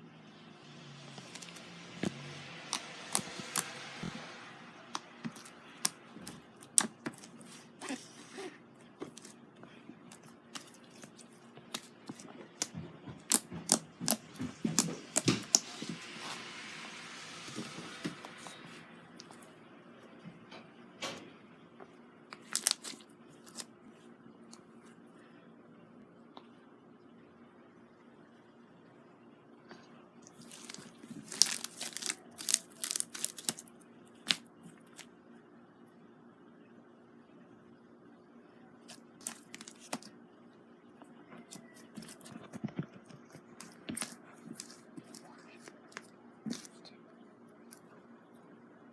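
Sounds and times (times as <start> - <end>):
slime crackling and popping: 1.2 - 4.2, 4.9 - 7.6, 13.3 - 15.8, 22.3 - 23.6, 30.3 - 33.7, 34.3 - 35.0, 39.2 - 40.1, 43.6 - 45.2.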